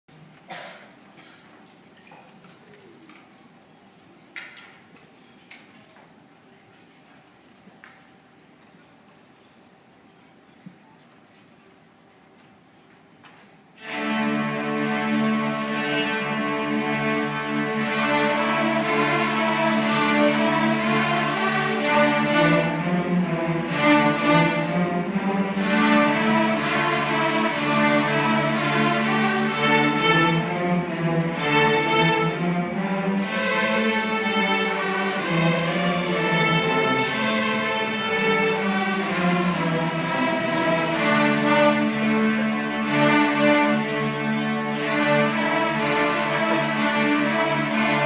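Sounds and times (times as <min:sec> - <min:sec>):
string orchestra playing: 0:13.8 - 0:48.0.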